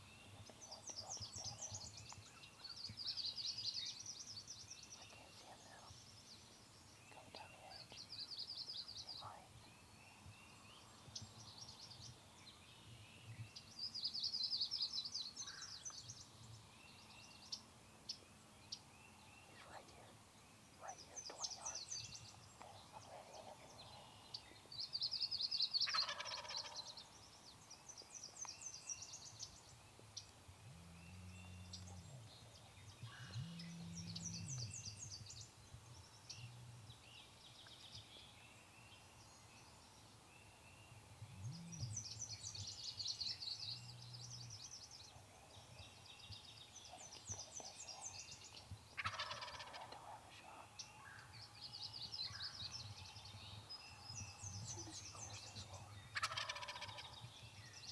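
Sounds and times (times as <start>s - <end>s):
turkeys gobbling: 56.2s - 57.0s.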